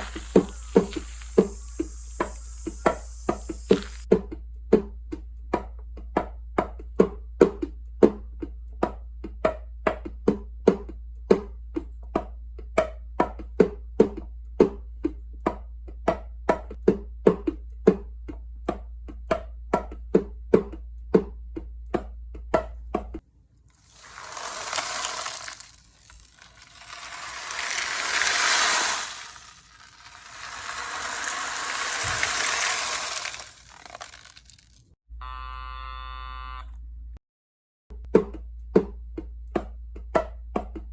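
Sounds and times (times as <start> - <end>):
rushing hiss-like noise: 0.0 - 4.1, 23.9 - 33.8.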